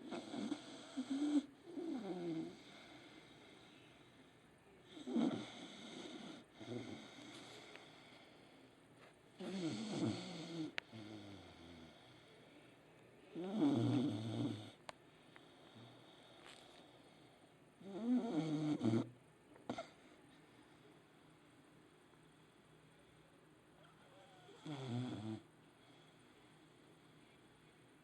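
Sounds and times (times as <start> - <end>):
dog snoring: 0.0 - 3.6, 4.9 - 7.9, 9.4 - 12.1, 13.4 - 14.8, 17.8 - 19.1, 19.7 - 20.0, 24.0 - 26.1.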